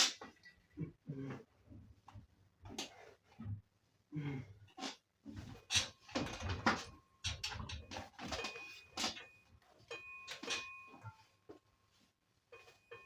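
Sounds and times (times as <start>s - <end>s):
clattering and knocks: 5.3s - 11.2s
faint steady high tone: 7.1s - 13.0s.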